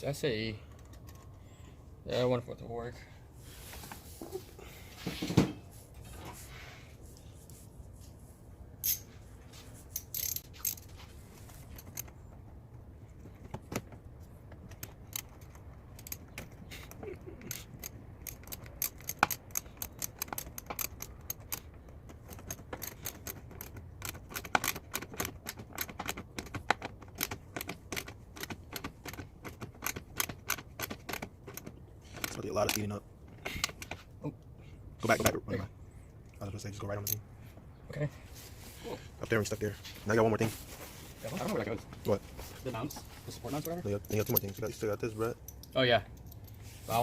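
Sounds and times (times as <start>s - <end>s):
metal tools clinking: 8.8s - 9.1s, 9.9s - 12.2s, 43.3s - 46.7s
hand ratchet clicking: 10.0s - 10.8s, 14.7s - 32.9s.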